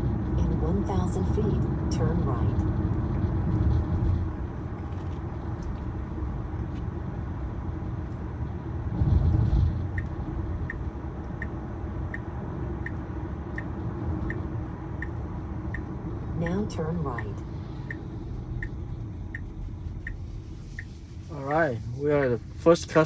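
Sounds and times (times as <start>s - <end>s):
rumble: 0.0s - 23.0s
tyre and road noise: 0.0s - 23.0s
turn signal ticking: 9.2s - 23.0s.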